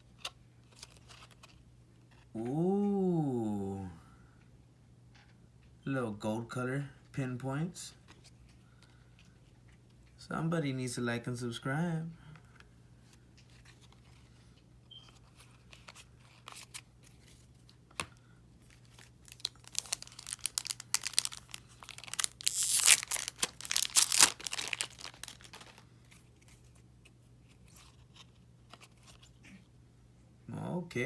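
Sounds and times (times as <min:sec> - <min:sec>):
wrapper crackling and tearing: 0:18.6 - 0:25.8.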